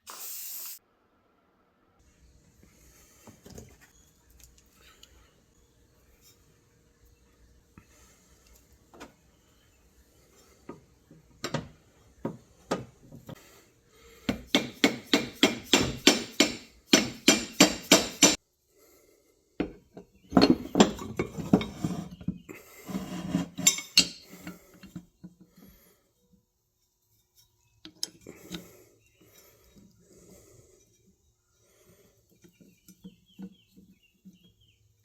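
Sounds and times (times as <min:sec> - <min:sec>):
metal tools clinking and tapping: 0:23.6 - 0:25.0.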